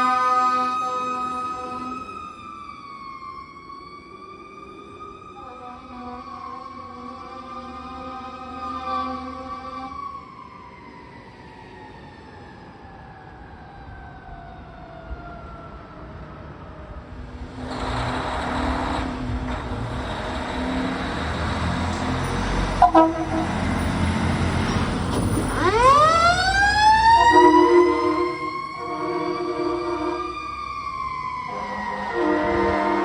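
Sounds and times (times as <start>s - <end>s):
fire truck siren: 0.0s - 33.0s
truck engine noise: 17.1s - 33.0s
pulsed horn blasts: 22.8s - 24.1s, 27.1s - 30.4s, 31.5s - 33.0s.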